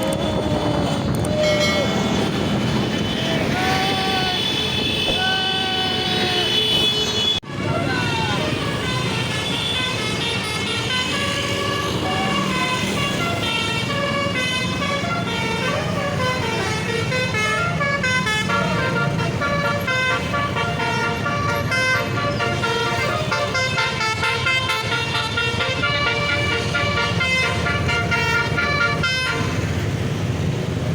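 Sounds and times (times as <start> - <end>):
bus musical horn melody: 8.5 - 29.8.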